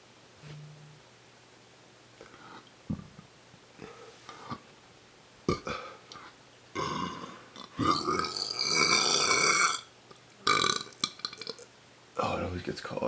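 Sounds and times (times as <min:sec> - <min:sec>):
person belching: 0:05.5 - 0:05.9, 0:06.8 - 0:11.6.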